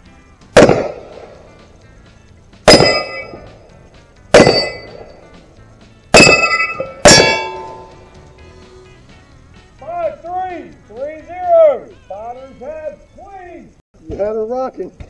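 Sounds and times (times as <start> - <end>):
pistol shots: 0.6 - 1.8, 2.6 - 5.4, 6.1 - 8.2
steel plates ringing: 2.7 - 5.4, 6.1 - 8.3.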